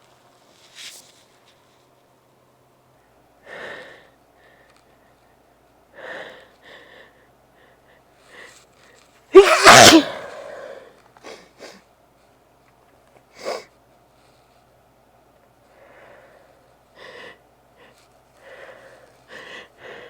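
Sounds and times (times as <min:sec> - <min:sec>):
person sneezing: 0:09.4 - 0:10.9
short breaths: 0:09.4 - 0:11.8.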